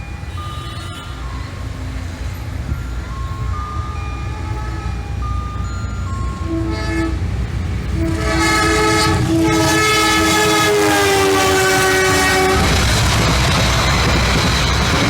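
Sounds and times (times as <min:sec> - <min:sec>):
clattering of passing train: 0:00.0 - 0:15.0
rumble of moving train: 0:00.0 - 0:15.0
locomotive horn long blast: 0:06.4 - 0:07.3, 0:07.9 - 0:12.8.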